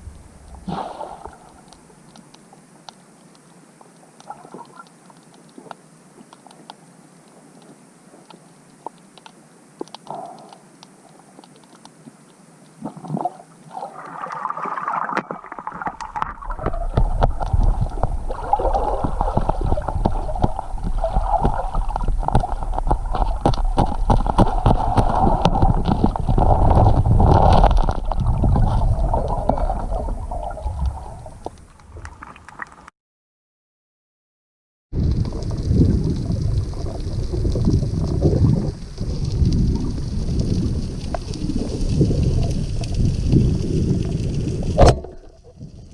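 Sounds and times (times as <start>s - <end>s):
water gurgling and sloshing: 0.0s - 2.8s, 9.8s - 32.9s, 35.0s - 45.9s
dense crackle: 0.0s - 32.9s, 34.9s - 45.9s
low rumble: 16.1s - 31.7s.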